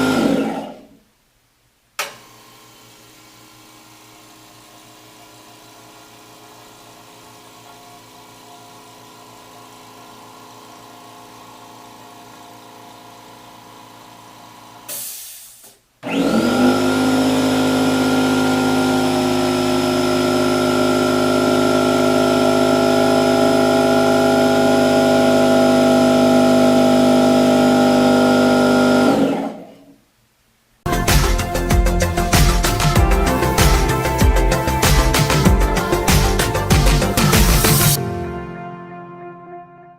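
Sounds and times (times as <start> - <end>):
loud air compressor running: 0.0 - 0.7, 3.9 - 29.6.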